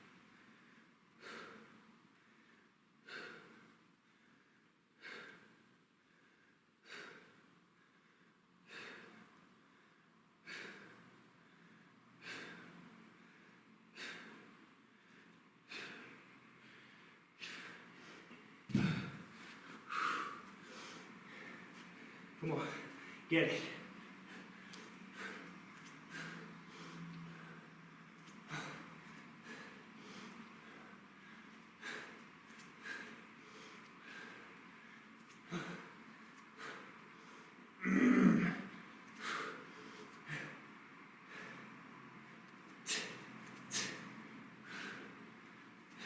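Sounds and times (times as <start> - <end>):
man exhaling forcefully: 18.7 - 19.3.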